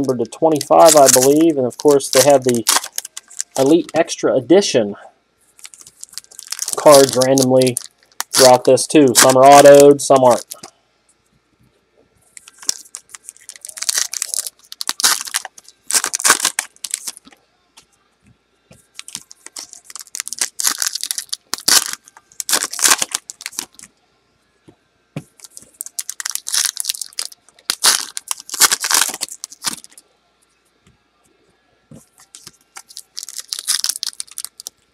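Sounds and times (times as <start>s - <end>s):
wrapping crinkling and tearing: 0.0s - 4.0s, 5.5s - 10.7s, 12.3s - 17.4s, 18.9s - 23.9s, 25.4s - 30.0s, 32.1s - 34.9s.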